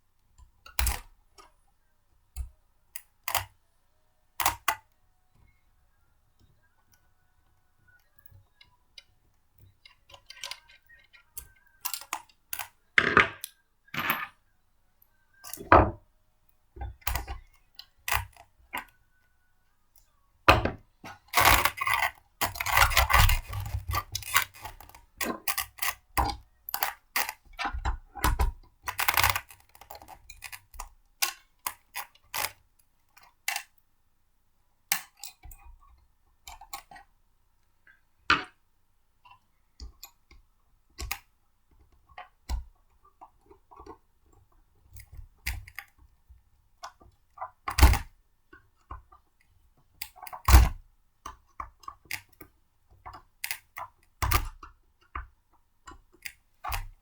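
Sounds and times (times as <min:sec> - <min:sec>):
blender parts clicking and knocking: 0:20.5 - 0:32.6.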